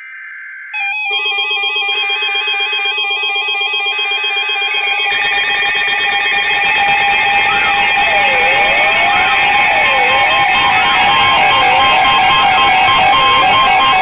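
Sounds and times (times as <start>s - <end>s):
steady alarm tones and buzz: 0.8s - 14.0s
weather alert radio alarms: 0.8s - 14.0s
two-pitch warbling beeps: 3.4s - 14.0s.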